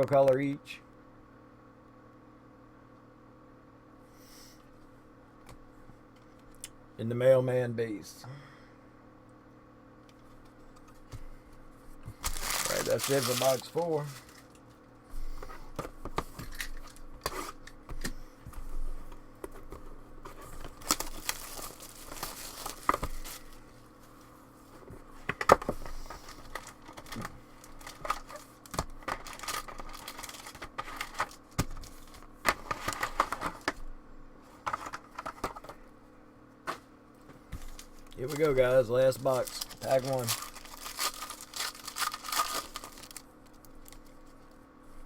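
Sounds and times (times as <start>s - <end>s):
plastic wrapping crinkling: 12.1s - 14.6s, 20.6s - 23.6s, 26.2s - 33.4s, 37.6s - 44.2s.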